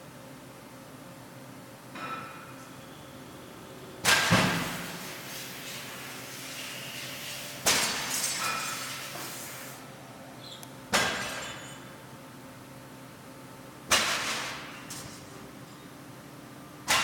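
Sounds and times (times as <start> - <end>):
machine running hum: 2.6 - 7.3.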